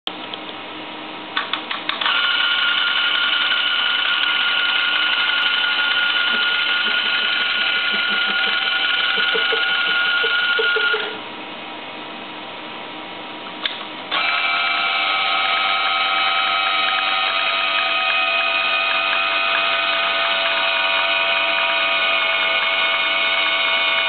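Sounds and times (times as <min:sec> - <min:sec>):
detector high-pitched whine: 0:02.0 - 0:11.2.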